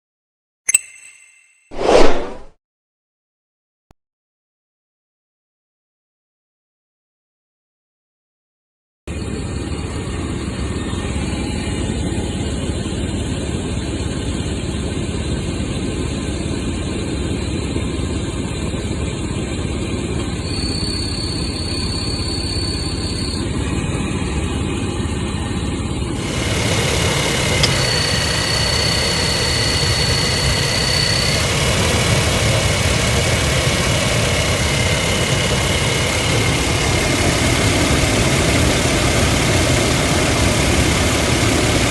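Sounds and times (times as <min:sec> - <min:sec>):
thin high-pitched tones: 0:00.7 - 0:02.3
engine idling: 0:09.1 - 0:41.9.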